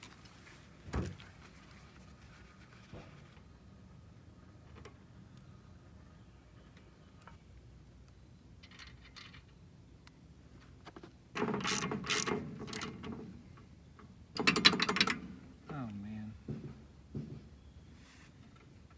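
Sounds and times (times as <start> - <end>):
mechanical ratcheting clicks: 11.4 - 13.0.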